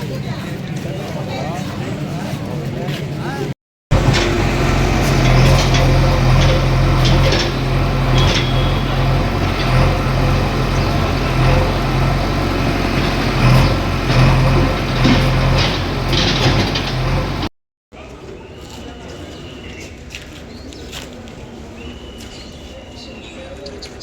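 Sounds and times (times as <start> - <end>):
debris knocking and clattering: 3.9 - 17.5
diesel engine running: 3.9 - 17.5.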